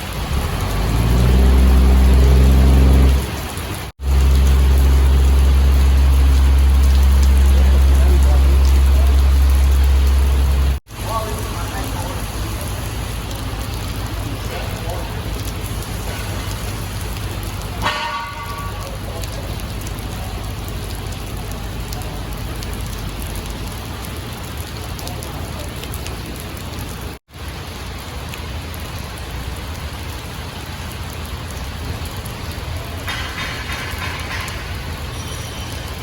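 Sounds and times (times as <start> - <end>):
rain hissing: 0.0 - 36.0
low steady drone: 1.4 - 3.3.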